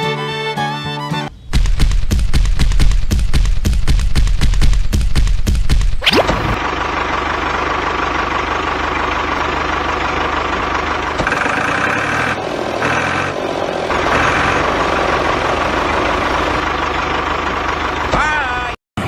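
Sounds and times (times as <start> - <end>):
high-pitched whine: 6.0 - 6.6
small tractor motor running: 6.6 - 18.2.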